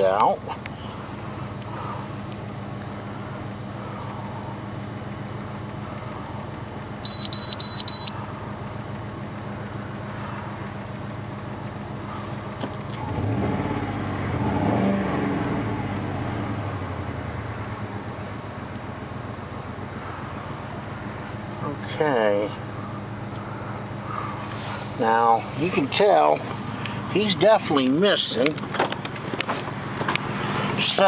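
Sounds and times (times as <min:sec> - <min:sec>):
car engine idling with misfire: 0:00.0 - 0:31.0
short high beeps: 0:06.8 - 0:09.8.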